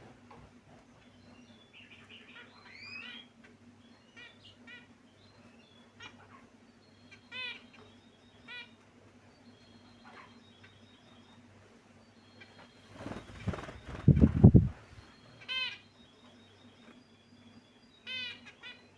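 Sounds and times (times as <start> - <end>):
faint low hum: 0.0 - 18.9
finches chirping: 12.1 - 18.9.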